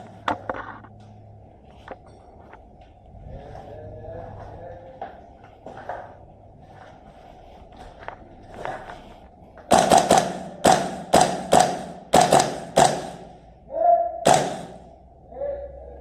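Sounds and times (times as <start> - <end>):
airsoft gun shots: 9.7 - 13.3, 14.2 - 14.9.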